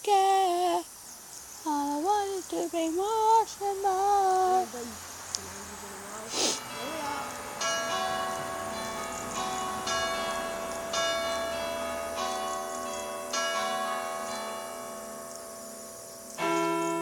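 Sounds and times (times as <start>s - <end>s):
church bells ringing: 6.6s - 17.0s.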